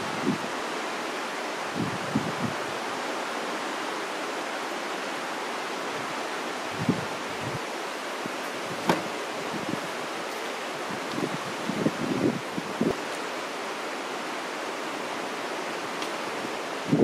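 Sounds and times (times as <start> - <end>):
steady outdoor hiss: 0.0 - 17.0
soft knocks: 8.8 - 9.2.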